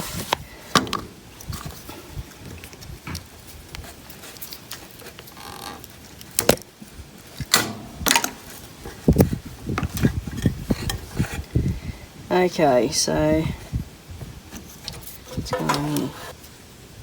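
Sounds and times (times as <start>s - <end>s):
tools and parts clattering: 7.3s - 9.1s, 9.7s - 11.4s, 14.5s - 16.5s.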